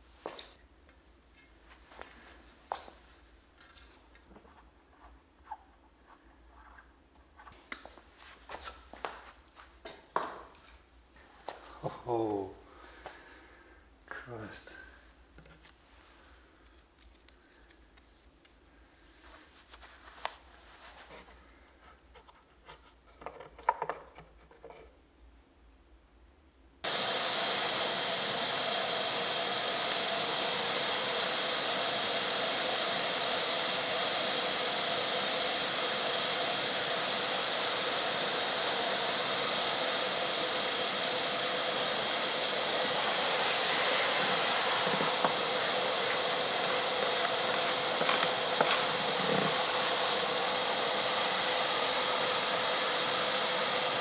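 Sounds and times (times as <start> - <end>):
small electric appliance running: 26.8 - 54.0.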